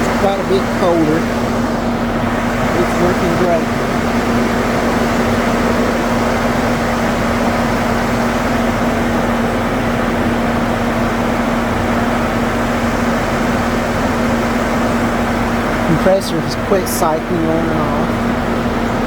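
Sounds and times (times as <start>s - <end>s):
car fan and engine noise: 0.0s - 19.0s.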